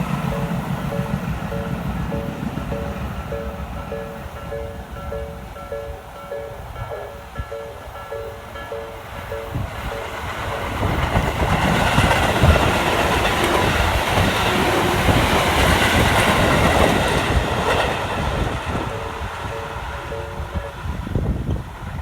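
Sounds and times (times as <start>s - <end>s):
level crossing warning bell: 0.0s - 21.3s
train passing: 0.0s - 22.0s.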